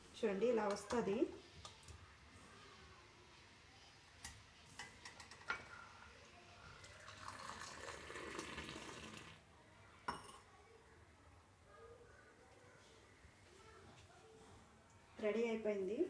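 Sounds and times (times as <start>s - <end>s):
tea pouring into cup: 4.8s - 9.5s.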